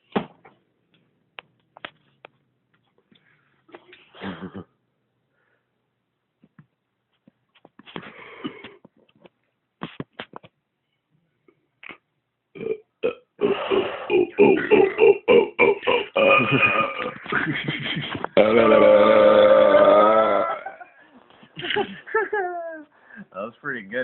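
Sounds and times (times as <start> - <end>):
man belching: 12.5 - 17.4, 18.4 - 20.9.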